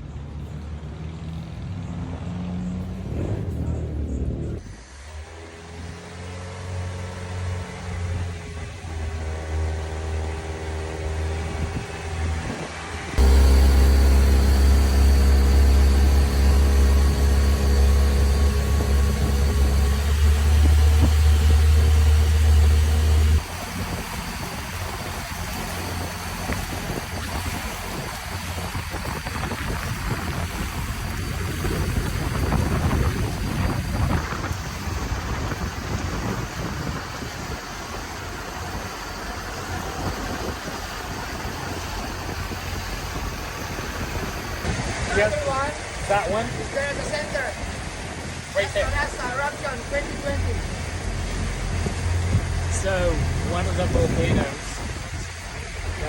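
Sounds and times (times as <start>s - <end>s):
motorboat engine humming: 0.0s - 56.0s
water noise: 0.3s - 56.0s
rushing wind: 11.3s - 46.9s.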